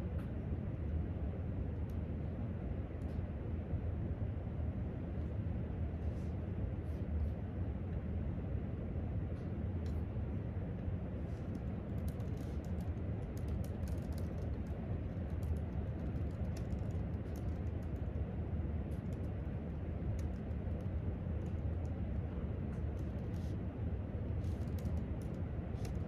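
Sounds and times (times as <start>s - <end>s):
low room hum: 0.0s - 26.0s
laptop keyboard typing: 12.0s - 18.1s.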